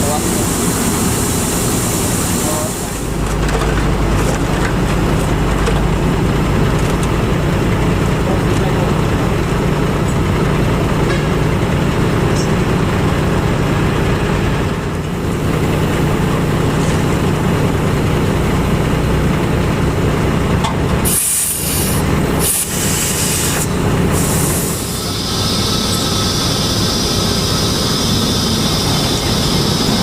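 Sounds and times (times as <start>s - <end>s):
diesel truck engine running: 0.0s - 30.0s
air hissing bursts: 0.2s - 3.1s, 21.0s - 30.0s.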